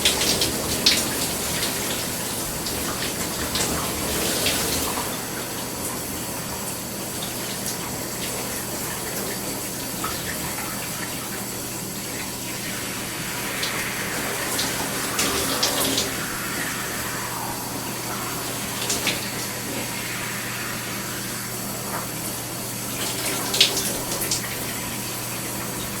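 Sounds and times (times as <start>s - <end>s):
shower water spraying: 0.0s - 26.0s
low steady hum: 11.7s - 25.0s.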